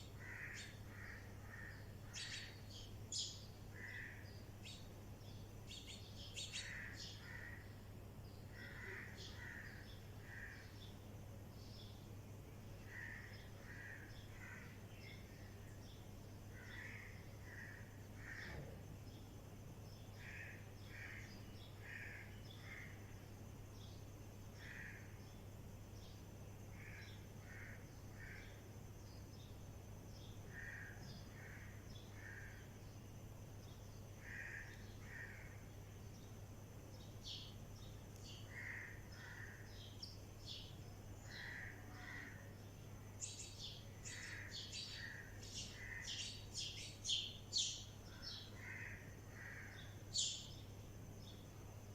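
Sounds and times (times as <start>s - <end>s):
birds calling: 0.0s - 7.8s, 43.2s - 51.4s
steady low hum: 0.0s - 51.9s
high bird chirping: 5.7s - 7.2s.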